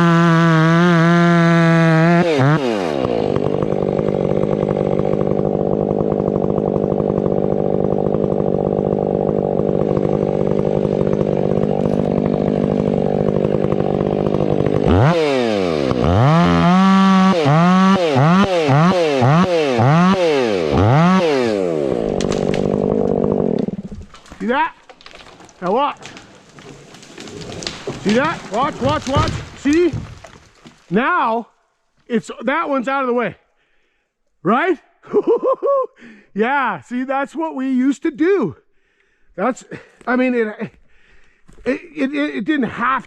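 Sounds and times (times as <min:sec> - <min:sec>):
chainsaw idling and revving: 0:00.0 - 0:31.0.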